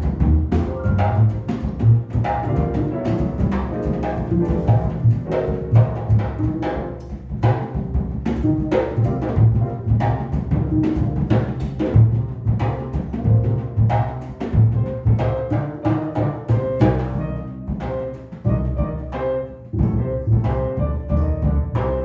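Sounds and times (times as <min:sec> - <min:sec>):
piano chords and runs: 0:00.0 - 0:22.0
plucked bass notes: 0:18.4 - 0:22.0.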